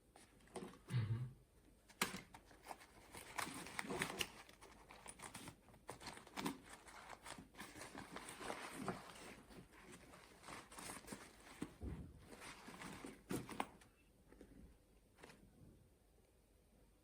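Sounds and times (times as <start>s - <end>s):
fabric bag rustling: 2.6s - 13.8s.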